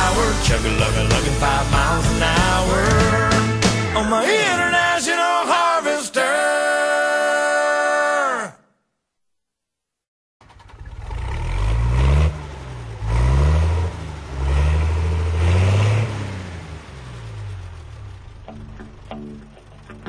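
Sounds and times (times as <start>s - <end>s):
vehicle engine accelerating: 0.0s - 3.9s, 10.4s - 20.0s.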